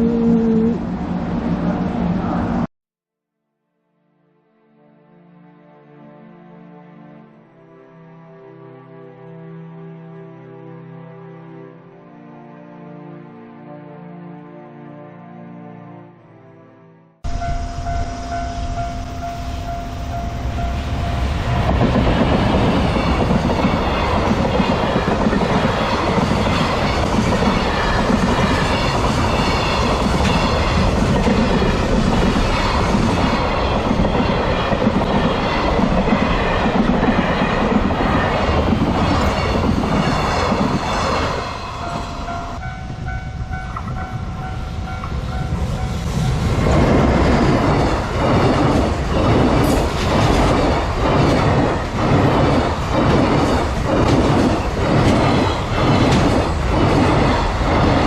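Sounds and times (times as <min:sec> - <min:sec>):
train rushing past: 0:00.0 - 0:02.7, 0:17.2 - 0:58.0
level crossing bell ringing: 0:17.3 - 0:21.4
train wheels clattering: 0:43.6 - 0:58.0.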